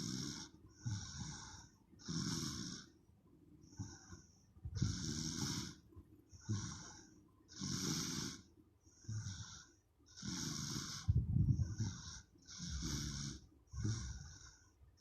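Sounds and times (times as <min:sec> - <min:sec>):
baby snoring: 0:00.0 - 0:02.9, 0:03.7 - 0:05.8, 0:06.4 - 0:14.7.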